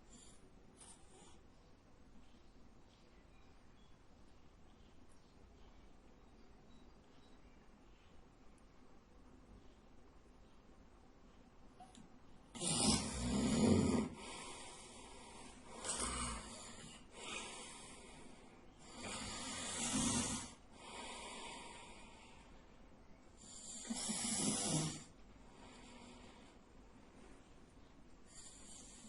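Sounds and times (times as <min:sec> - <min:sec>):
soft breaths: 0:00.0 - 0:29.0
man snoring loudly: 0:12.6 - 0:14.3, 0:18.9 - 0:20.6, 0:23.6 - 0:25.1.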